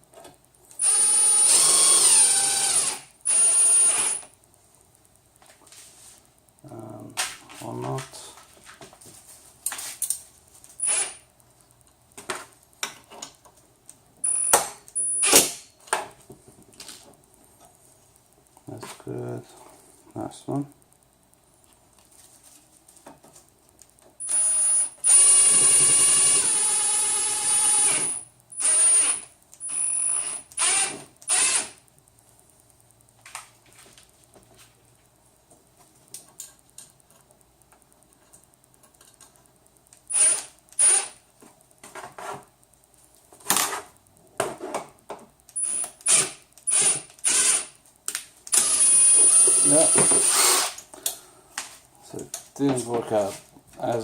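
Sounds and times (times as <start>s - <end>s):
cordless drill driving a screw: 0.8s - 4.3s, 10.8s - 11.2s, 24.2s - 31.8s, 40.1s - 41.2s, 45.6s - 47.7s, 48.5s - 50.8s.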